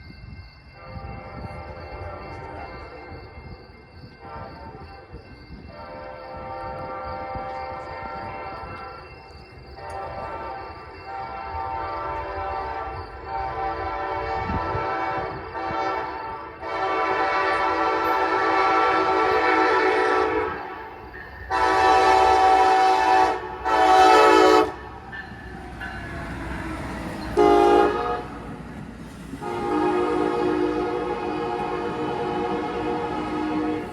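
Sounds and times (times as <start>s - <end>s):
train rumbling: 0.0s - 33.9s
train air horn blasts: 9.8s - 20.8s, 21.5s - 24.9s, 27.4s - 28.4s, 29.4s - 33.9s.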